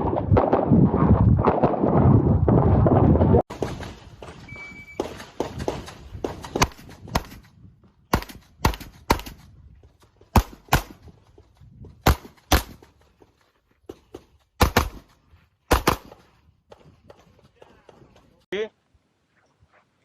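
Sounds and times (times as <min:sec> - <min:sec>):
handgun shots: 0:15.7 - 0:16.2.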